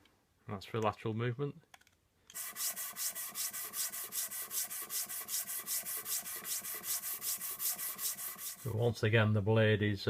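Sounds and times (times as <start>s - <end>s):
blade scraping on sharpening stone: 2.3s - 8.7s.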